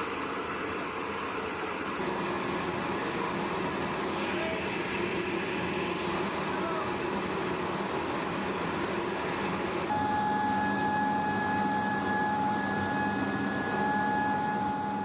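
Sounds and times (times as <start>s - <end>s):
high whine: 8.0s - 15.0s.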